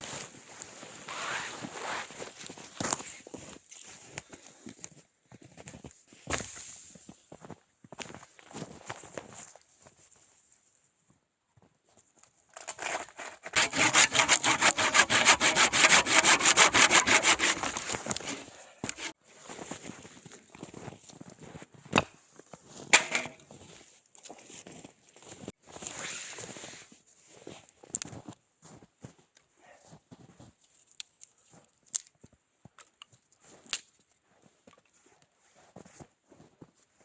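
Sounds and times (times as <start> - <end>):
hand saw cutting wood: 12.6 - 19.2, 23.0 - 23.4
knocks and handling noise: 22.9 - 23.5.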